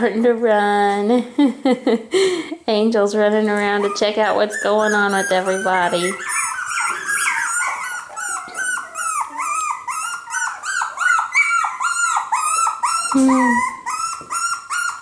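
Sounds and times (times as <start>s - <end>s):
puppies yipping and whining: 3.5s - 15.0s.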